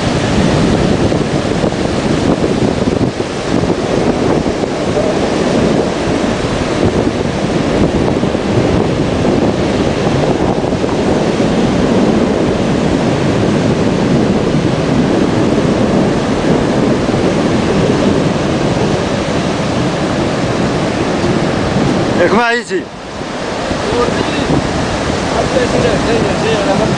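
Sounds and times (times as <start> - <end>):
sea surf washing: 0.0 - 26.9
wind buffeting microphone: 0.0 - 26.9.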